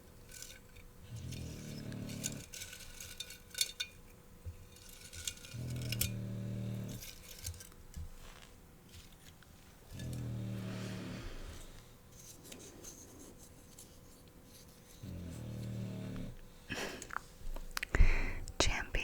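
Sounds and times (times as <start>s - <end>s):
puppy snoring: 1.0s - 2.6s, 5.5s - 7.3s, 9.8s - 12.0s, 15.0s - 17.1s.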